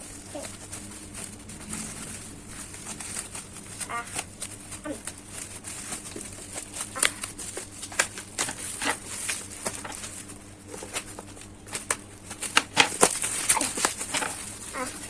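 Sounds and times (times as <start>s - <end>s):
faint steady hum: 0.0s - 15.0s
packaging clicks and rustles: 0.0s - 15.0s.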